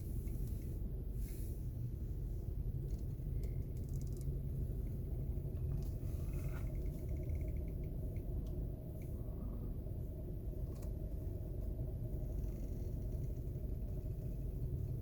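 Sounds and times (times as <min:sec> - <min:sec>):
car engine low rumble: 0:00.0 - 0:15.0
steering wheel creaks: 0:02.8 - 0:04.4, 0:05.6 - 0:07.9, 0:12.2 - 0:14.9.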